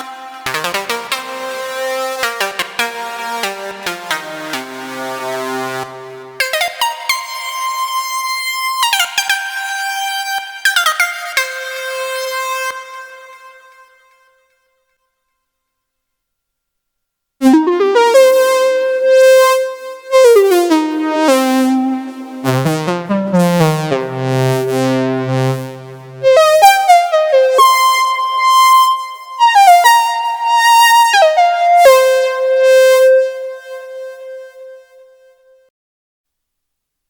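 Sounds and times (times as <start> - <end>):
synthesizer bass line: 17.4 - 34.8
synthesizer melody: 17.4 - 35.0.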